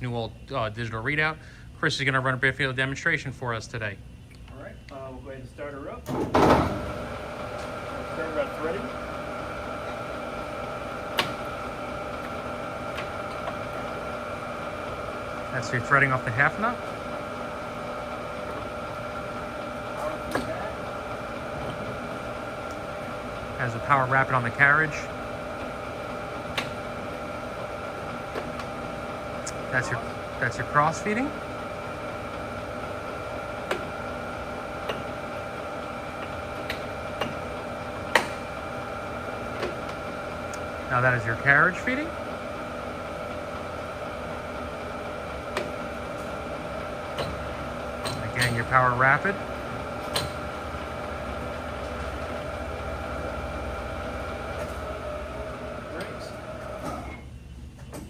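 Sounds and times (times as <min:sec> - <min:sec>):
lathe humming and whining: 0:00.0 - 0:57.8.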